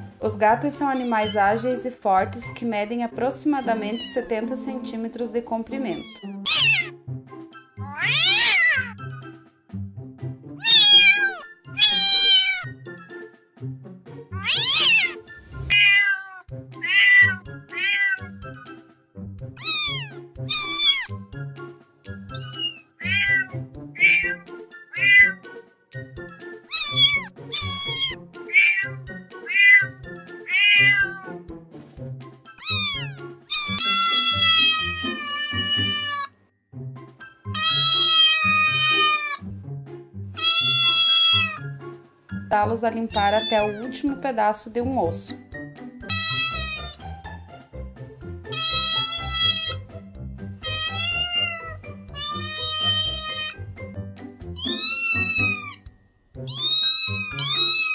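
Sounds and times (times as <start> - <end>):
cat meowing: 0.9 - 1.4, 3.6 - 4.3, 5.8 - 7.0, 7.8 - 9.0, 10.6 - 12.8, 14.4 - 18.4, 19.6 - 21.1, 22.3 - 25.6, 26.7 - 31.4, 32.6 - 36.3, 37.5 - 39.5, 40.4 - 41.7, 43.1 - 44.0, 46.1 - 47.0, 48.5 - 49.9, 50.6 - 53.7, 54.6 - 57.9.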